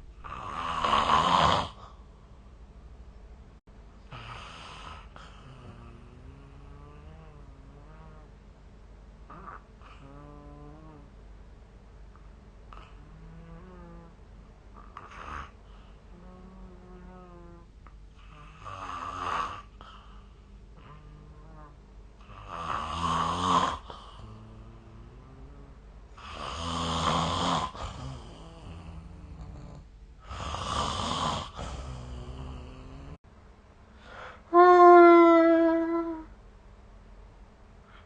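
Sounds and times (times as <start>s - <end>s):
person snoring roughly: 0.2s - 1.8s, 22.3s - 33.2s.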